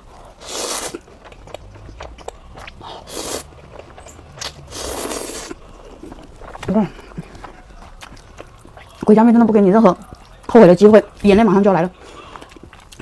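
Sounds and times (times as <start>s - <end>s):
wet chewing clicks: 0.0s - 11.4s, 12.0s - 13.0s
person slurping noodles: 0.2s - 1.1s, 2.0s - 6.3s.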